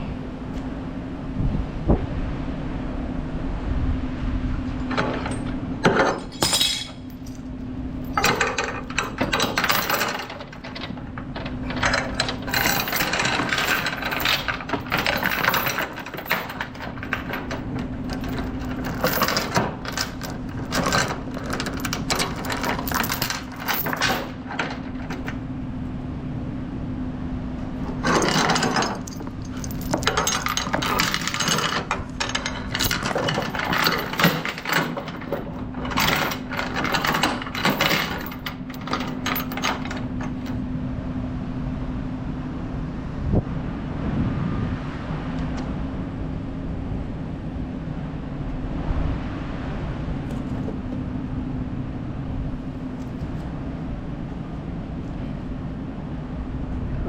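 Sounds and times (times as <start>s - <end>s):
steady low hum: 0.0s - 57.0s
steel chains rattling: 4.8s - 25.6s, 27.6s - 40.6s.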